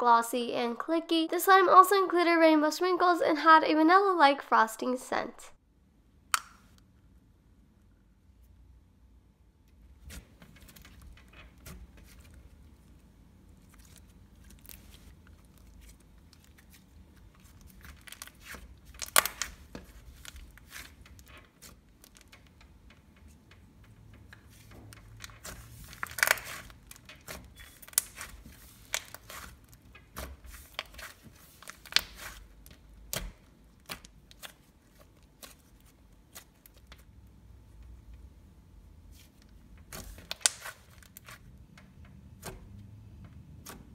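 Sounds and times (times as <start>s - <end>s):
slime squishing and crackling: 10.0s - 37.2s, 39.1s - 41.6s.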